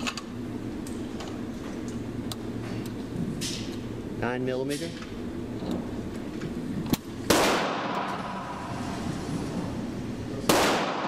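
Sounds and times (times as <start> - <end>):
gunshots with echo: 7.3 - 8.5, 10.5 - 11.0.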